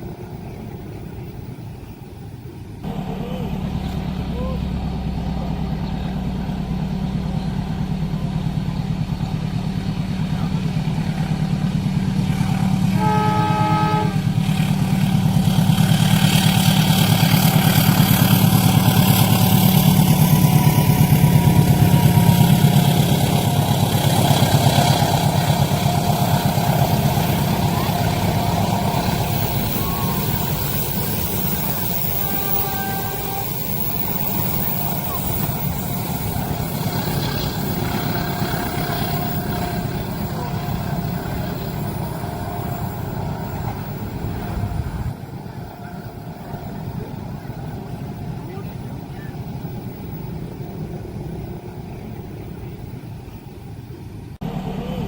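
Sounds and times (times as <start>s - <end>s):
train engine rumble: 0.0s - 55.0s
wheels running over rails: 3.7s - 53.9s
train horn blast: 12.1s - 48.2s.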